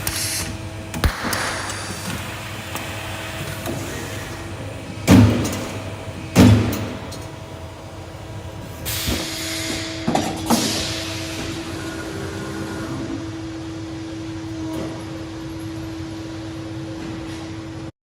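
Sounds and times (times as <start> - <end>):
punching machine hum: 0.0 - 15.2
loud punching strokes: 1.0 - 3.8.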